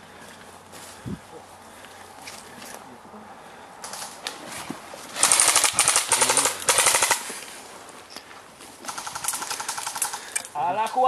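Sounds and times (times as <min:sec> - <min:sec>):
airsoft rifle full-auto bursts: 0:05.2 - 0:07.3, 0:08.8 - 0:10.4.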